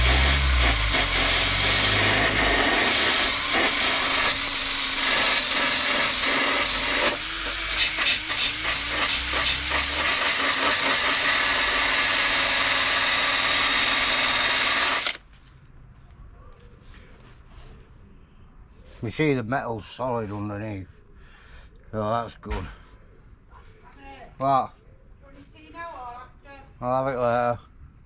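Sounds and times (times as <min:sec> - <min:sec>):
power tool scouring metal: 0:00.0 - 0:15.2.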